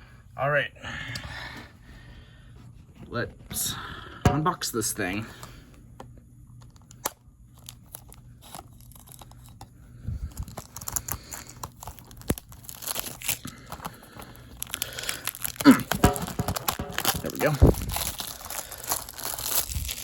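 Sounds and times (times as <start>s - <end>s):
plastic wrapping crinkling and tearing: 7.5s - 9.7s, 10.3s - 20.0s.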